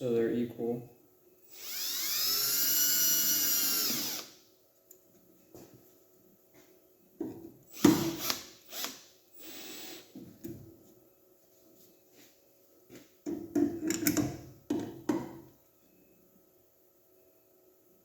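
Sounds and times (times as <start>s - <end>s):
cordless drill motor whining: 1.5s - 4.4s, 7.7s - 10.1s.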